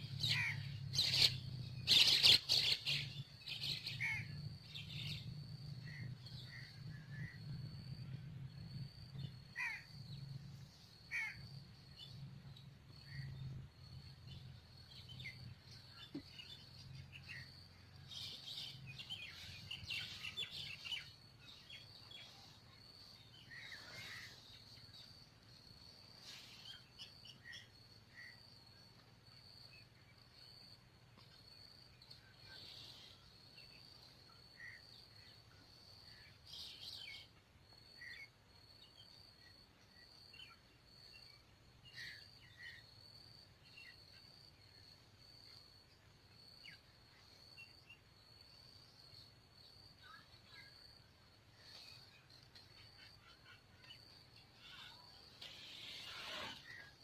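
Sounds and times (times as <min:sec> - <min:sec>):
bird chirps: 0:00.0 - 0:07.6, 0:11.2 - 0:28.4, 0:49.9 - 0:57.0
high-pitched insect drone: 0:53.9 - 0:57.0.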